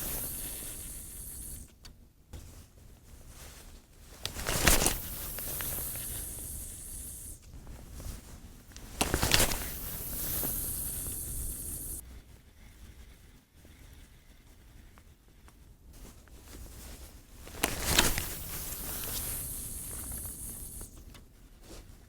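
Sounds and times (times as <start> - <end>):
rushing hiss: 0.0 - 1.7, 4.3 - 7.4, 9.0 - 12.0, 17.6 - 21.0.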